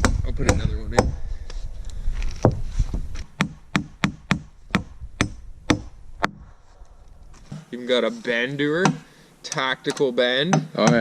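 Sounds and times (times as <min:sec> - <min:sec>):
hammer striking nail: 0:03.3 - 0:06.4, 0:08.8 - 0:11.0.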